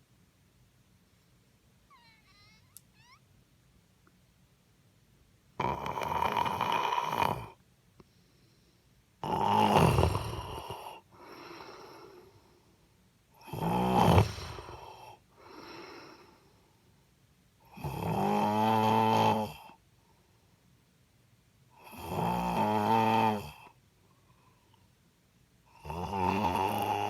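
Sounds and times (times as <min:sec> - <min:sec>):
woman snoring: 0:05.6 - 0:07.6, 0:09.2 - 0:12.3, 0:13.4 - 0:16.3, 0:17.7 - 0:19.7, 0:21.8 - 0:23.7, 0:25.7 - 0:27.0
soft breathing: 0:08.0 - 0:09.1, 0:10.8 - 0:13.0, 0:14.1 - 0:17.0, 0:23.7 - 0:25.0.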